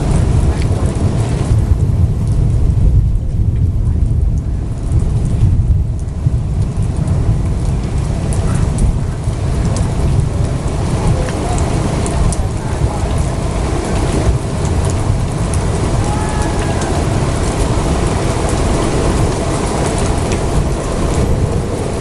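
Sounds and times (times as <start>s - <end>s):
raindrops ticking: 0.0s - 22.0s
thunder rumbling: 0.0s - 22.0s.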